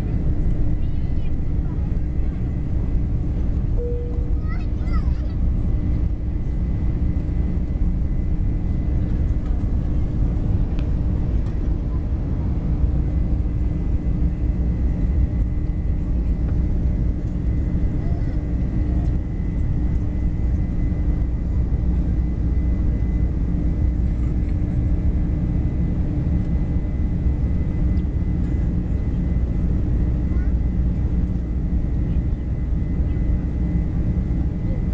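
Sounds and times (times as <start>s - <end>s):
airliner engine roar: 0.0s - 34.9s
faint high whine: 3.8s - 4.8s.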